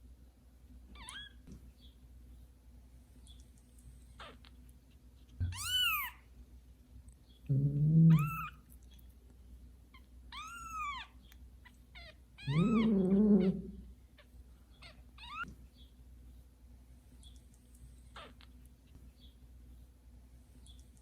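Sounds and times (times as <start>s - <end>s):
adult cat calling: 5.4s - 6.2s, 7.5s - 8.6s, 10.3s - 11.2s, 12.0s - 15.5s
kitten mewing: 5.4s - 6.2s, 7.5s - 8.6s, 12.0s - 13.9s.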